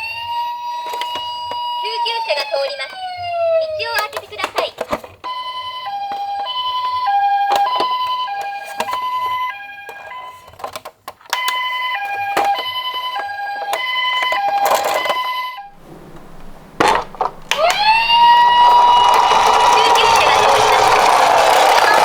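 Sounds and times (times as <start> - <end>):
toy two-tone siren: 0.0 - 4.6, 5.2 - 15.7, 17.5 - 22.0
plastic clicks and knocks: 3.9 - 5.4, 7.5 - 22.0.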